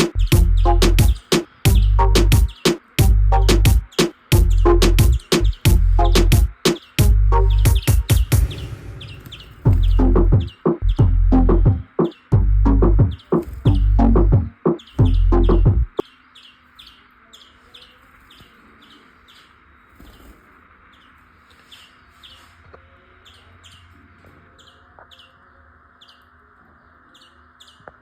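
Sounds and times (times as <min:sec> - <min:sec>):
loud music: 0:00.0 - 0:16.0
finch chirping: 0:00.0 - 0:28.0.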